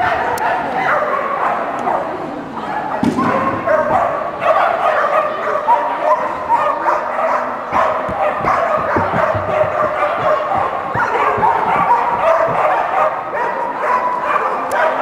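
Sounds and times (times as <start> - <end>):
dogs barking and yipping: 0.0 - 15.0
dull thuds: 7.8 - 13.0.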